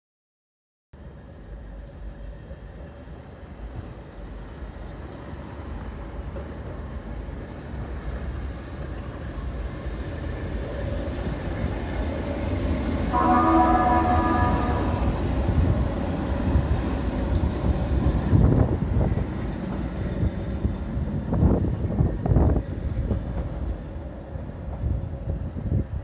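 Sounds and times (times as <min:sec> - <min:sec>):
electric train rumbling: 0:01.0 - 0:26.0
train horn chord: 0:13.1 - 0:15.6.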